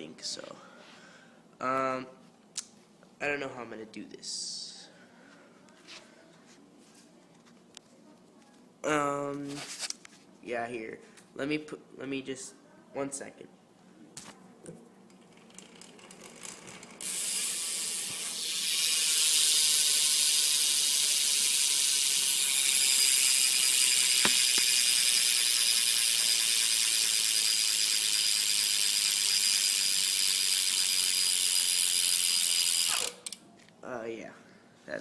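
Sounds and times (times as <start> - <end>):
bicycle hub ratcheting buzz: 15.2 - 33.4.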